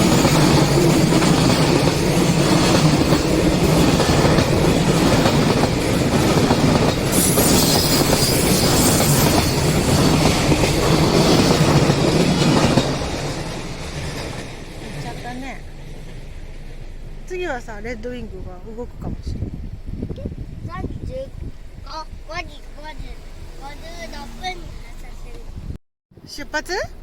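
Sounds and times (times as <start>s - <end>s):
freight train wheels clattering: 0.0s - 17.3s.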